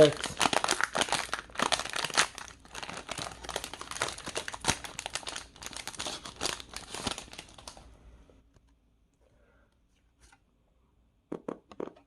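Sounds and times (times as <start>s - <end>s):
foil wrapper tearing and crinkling: 0.0s - 7.8s.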